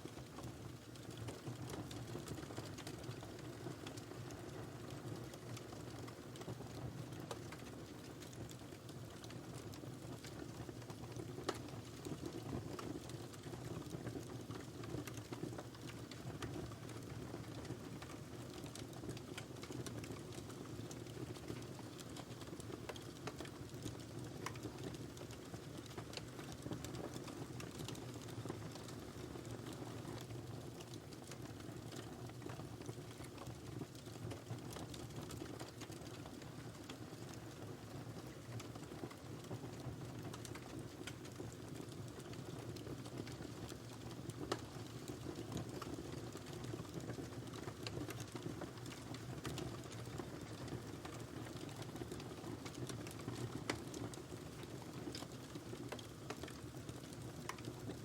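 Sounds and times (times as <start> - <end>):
wood fire crackling and popping: 0.0 - 58.0.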